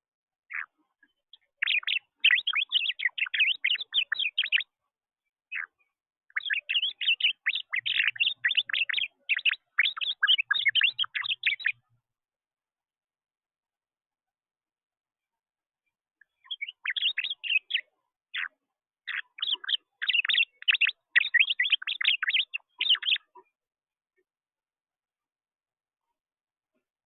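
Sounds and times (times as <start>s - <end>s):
songbird singing: 0.5s - 4.7s, 6.3s - 11.8s, 16.2s - 23.4s.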